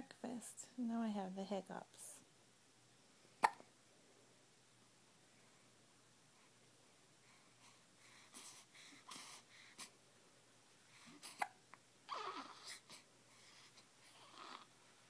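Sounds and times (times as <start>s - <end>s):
baby hiccups: 3.4s - 3.7s, 11.2s - 12.8s
faint baby breaths: 7.2s - 10.0s, 10.8s - 14.7s.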